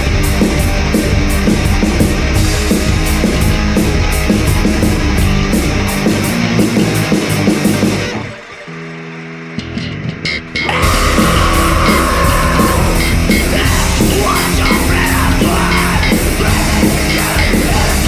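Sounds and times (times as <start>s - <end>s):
punk band playing: 0.0s - 18.0s.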